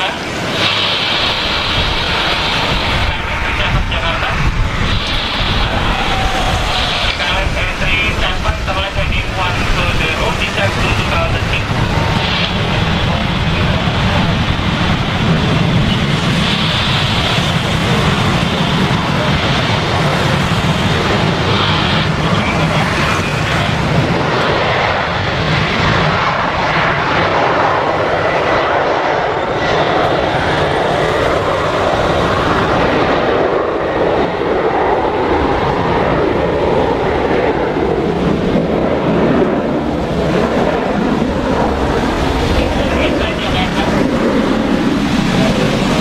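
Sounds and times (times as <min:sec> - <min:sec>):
jet engine roar: 0:00.0 - 0:46.0
heavy rain hiss: 0:00.1 - 0:14.4.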